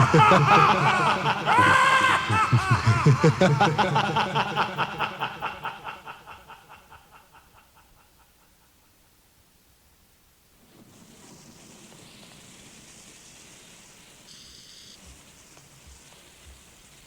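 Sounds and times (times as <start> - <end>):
spooky laughter: 0.0 - 8.7.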